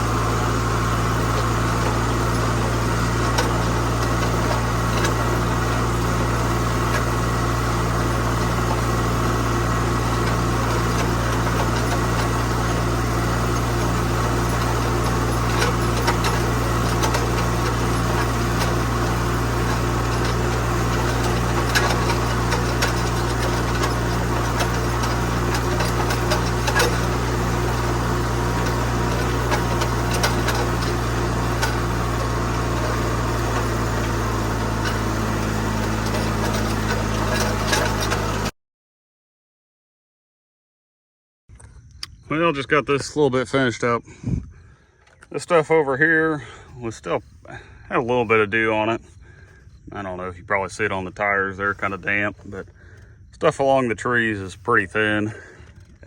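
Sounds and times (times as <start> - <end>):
tractor engine running: 0.0 - 38.6, 41.6 - 56.0
light clicks and rattles: 10.1 - 38.3.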